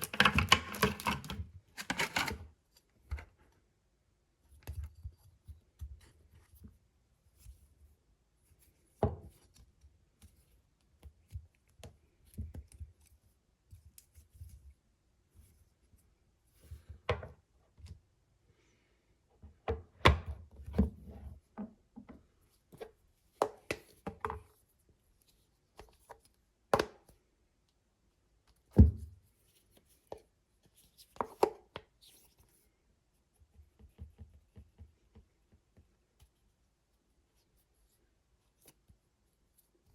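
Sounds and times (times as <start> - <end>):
packaging clicks and knocks: 0.0 - 2.4.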